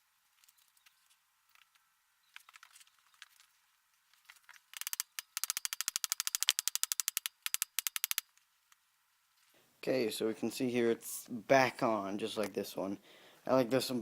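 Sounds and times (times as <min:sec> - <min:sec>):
rapid ratchet clicking: 0:04.8 - 0:08.2.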